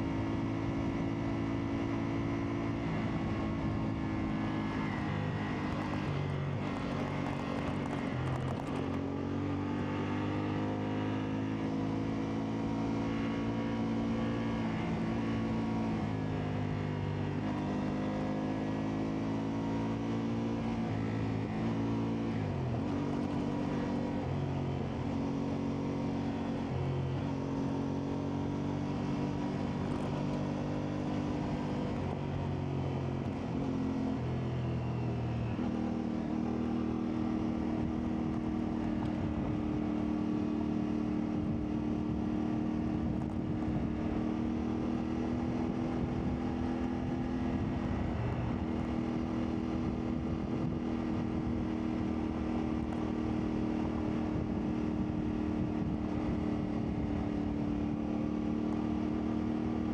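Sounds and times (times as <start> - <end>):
motorcycle engine revving: 0.3 - 34.5.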